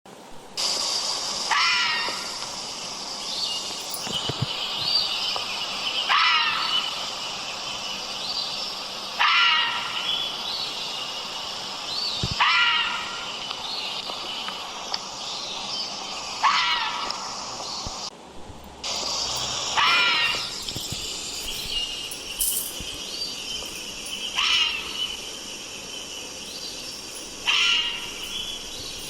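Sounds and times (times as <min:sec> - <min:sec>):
high-pitched background hiss: 0:00.1 - 0:29.0
animal harsh screaming cries: 0:01.5 - 0:02.4, 0:06.1 - 0:06.9, 0:09.2 - 0:10.2, 0:12.4 - 0:13.3, 0:16.4 - 0:17.2, 0:19.3 - 0:22.2, 0:24.1 - 0:25.2, 0:27.1 - 0:29.0.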